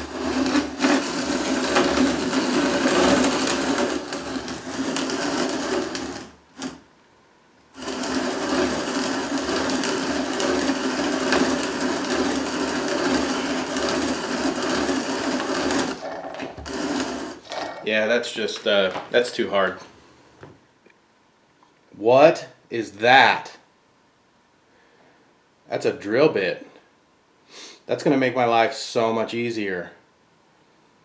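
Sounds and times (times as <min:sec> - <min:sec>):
grain mill grinding: 0:00.0 - 0:06.8, 0:07.7 - 0:17.9.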